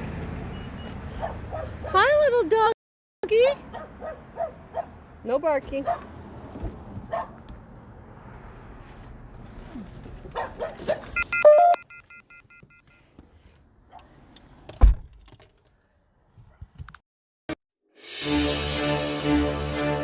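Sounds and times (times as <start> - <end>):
electronic chime beeping: 11.2 - 12.3.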